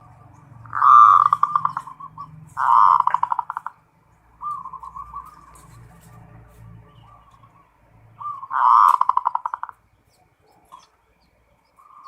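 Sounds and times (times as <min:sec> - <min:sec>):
dove cooing: 0:00.0 - 0:03.8, 0:04.4 - 0:06.1, 0:06.9 - 0:11.0.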